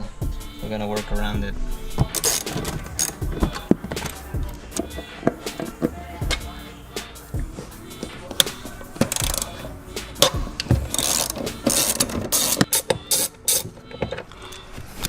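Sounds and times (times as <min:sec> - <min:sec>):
ratchet wrench clicking: 0:08.0 - 0:13.7.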